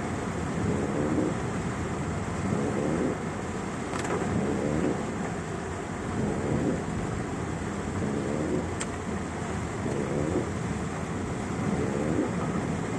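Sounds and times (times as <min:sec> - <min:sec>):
heavy rain pouring: 0:00.0 - 0:12.9
low rumbling roar: 0:00.6 - 0:01.6, 0:02.4 - 0:03.4, 0:04.2 - 0:05.4, 0:06.0 - 0:12.9.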